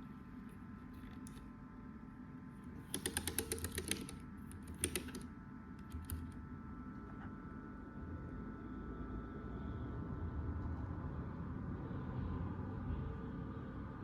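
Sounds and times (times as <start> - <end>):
faint hum: 0.0 - 14.0
mechanical keyboard typing: 2.8 - 6.3.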